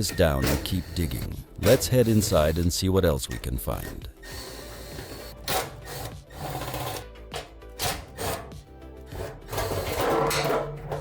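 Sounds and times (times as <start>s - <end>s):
background music with bass: 0.0s - 11.0s
scraping and clicking noises: 9.2s - 11.0s.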